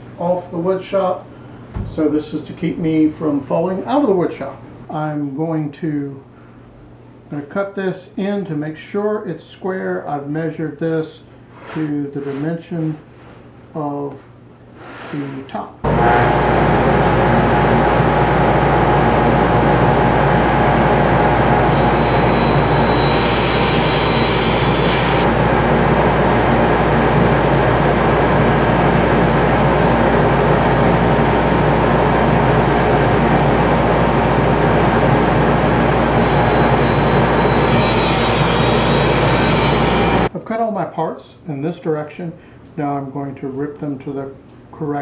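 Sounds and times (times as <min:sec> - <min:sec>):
table saw running: 0:15.9 - 0:40.3
saw blade cutting wood: 0:21.7 - 0:25.4, 0:36.1 - 0:40.3.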